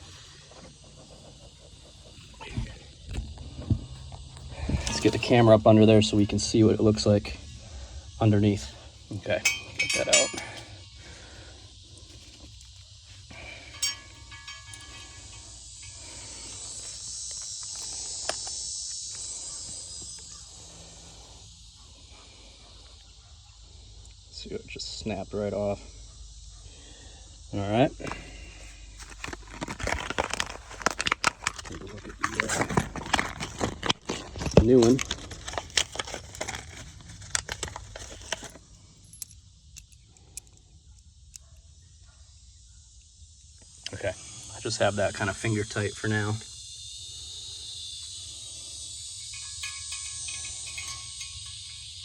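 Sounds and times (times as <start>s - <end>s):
insects chorus: 0.0s - 52.0s
small metal parts clinking: 4.2s - 7.4s, 9.2s - 10.9s, 12.0s - 18.5s, 28.9s - 40.6s, 48.9s - 52.0s.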